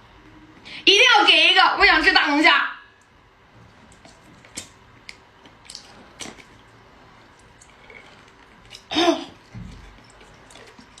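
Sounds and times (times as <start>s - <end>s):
wet chewing clicks: 3.8s - 11.0s.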